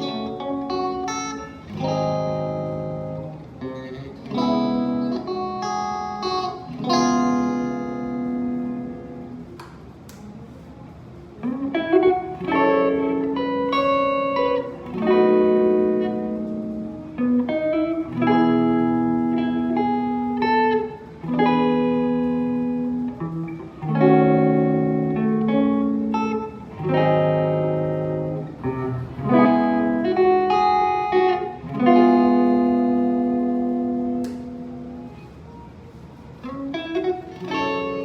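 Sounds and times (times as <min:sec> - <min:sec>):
electric guitar chords: 0:00.0 - 0:10.5, 0:11.2 - 0:38.0.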